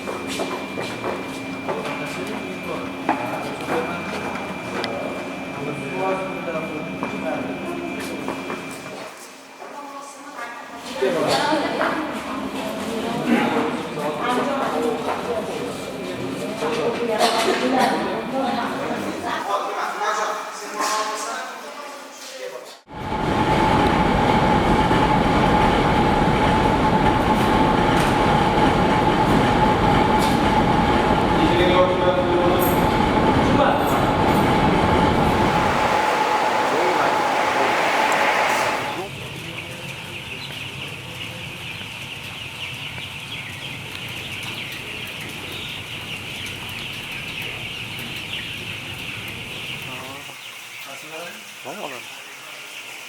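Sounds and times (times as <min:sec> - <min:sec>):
machinery noise with high whine: 0:00.0 - 0:09.1, 0:22.9 - 0:41.6
chickens calling: 0:34.2 - 0:53.0.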